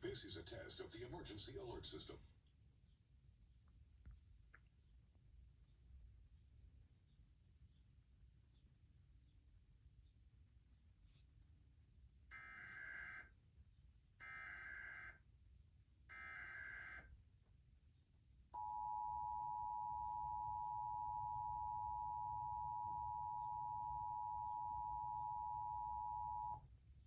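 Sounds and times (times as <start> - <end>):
two-tone attention signal: 18.6 - 26.6
screechy digital data bursts: 19.6 - 26.6.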